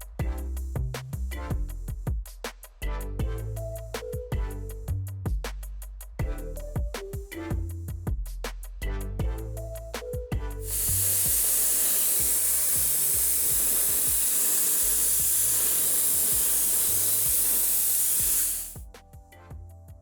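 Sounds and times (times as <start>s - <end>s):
background music: 0.0s - 5.5s, 6.1s - 20.0s
spray hiss: 10.6s - 18.8s.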